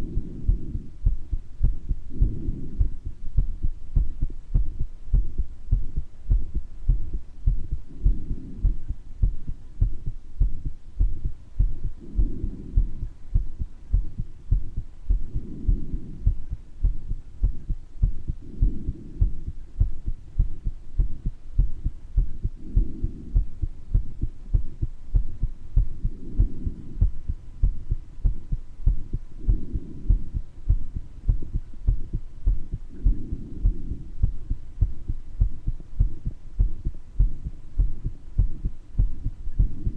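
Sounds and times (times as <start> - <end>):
breath sound: 0.0 - 4.1, 6.3 - 10.0, 11.0 - 35.0
heart beating: 0.0 - 39.9.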